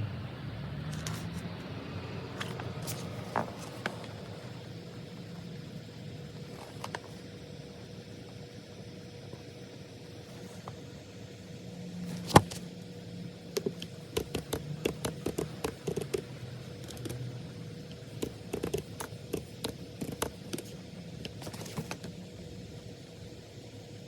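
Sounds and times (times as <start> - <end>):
steady low hum: 0.0 - 24.0
desk clicks and taps: 13.6 - 17.2, 17.9 - 22.0.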